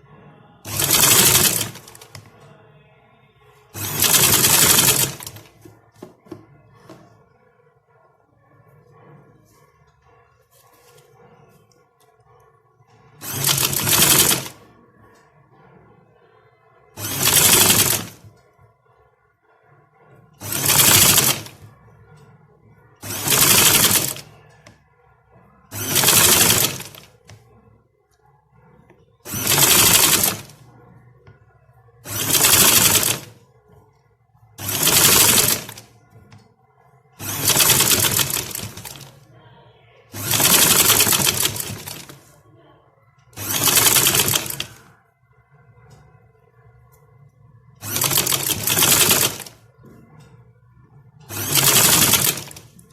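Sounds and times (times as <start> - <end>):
sewing machine stitching: 0.6 - 2.4, 3.7 - 7.0, 12.9 - 14.7, 16.9 - 18.4, 19.9 - 22.3, 23.0 - 24.5, 25.7 - 27.6, 28.6 - 30.9, 32.0 - 33.4, 34.6 - 36.4, 37.2 - 39.2, 40.2 - 42.4, 43.4 - 44.9, 47.8 - 49.6, 51.3 - 52.9.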